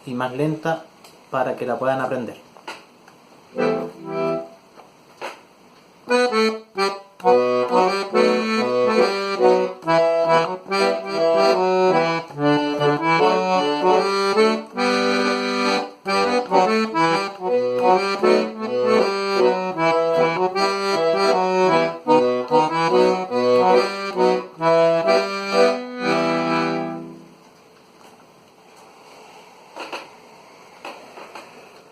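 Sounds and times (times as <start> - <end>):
accordion playing a tune: 3.5 - 4.6, 6.1 - 27.4.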